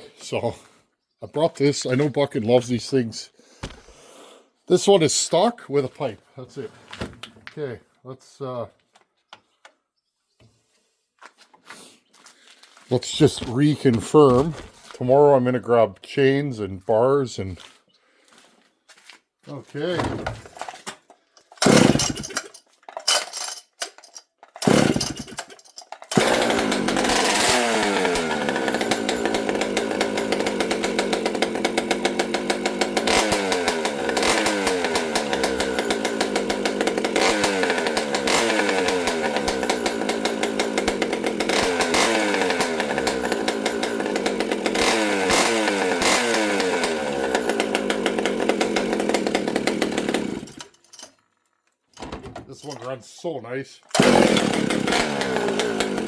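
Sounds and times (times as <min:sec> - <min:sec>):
chainsaw pull-start: 0:19.9 - 0:52.9, 0:53.8 - 0:56.0
chainsaw throttle blips: 0:21.6 - 0:22.6, 0:24.6 - 0:50.8, 0:53.9 - 0:56.0.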